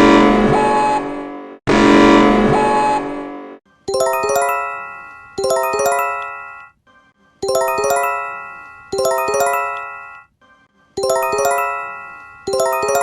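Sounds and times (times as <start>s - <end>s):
bell-like chime: 3.9s - 6.7s, 7.4s - 10.3s, 11.0s - 13.0s.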